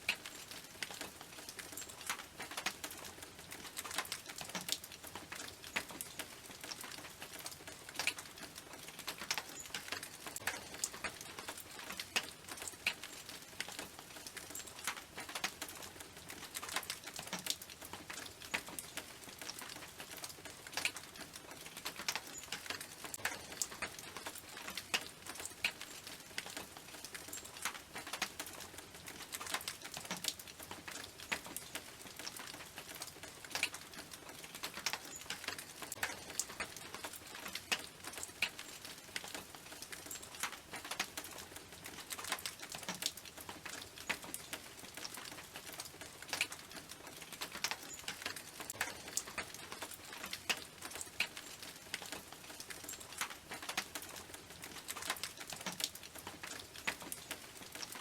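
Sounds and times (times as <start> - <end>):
rain on a tin roof: 0.0 - 58.0.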